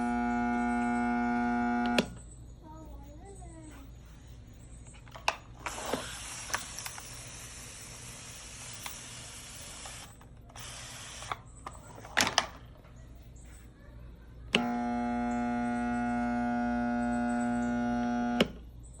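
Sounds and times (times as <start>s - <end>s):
power washer motor humming: 0.0s - 2.2s, 5.2s - 11.4s, 14.5s - 18.6s.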